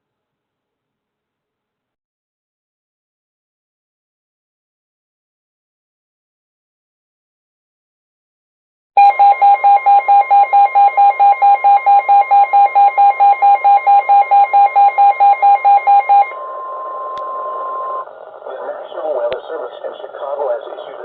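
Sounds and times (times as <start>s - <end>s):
steady warning alarm tone: 9.0s - 18.1s
alert radio beeping: 9.0s - 19.1s
radio hiss: 16.4s - 21.0s.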